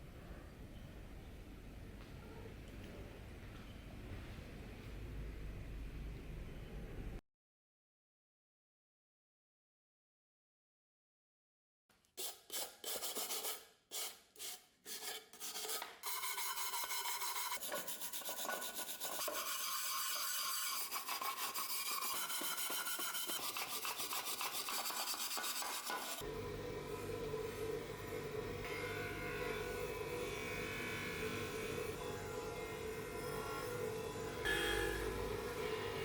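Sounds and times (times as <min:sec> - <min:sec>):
hand scraping a workpiece: 0:12.2 - 0:26.2
music: 0:26.2 - 0:36.0.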